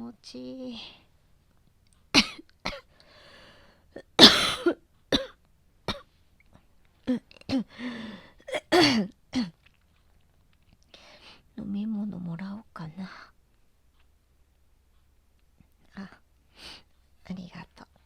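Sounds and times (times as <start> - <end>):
woman coughing: 2.2 - 2.9, 4.0 - 6.0, 8.4 - 9.5
breathy gasps: 3.0 - 3.9, 7.7 - 8.5.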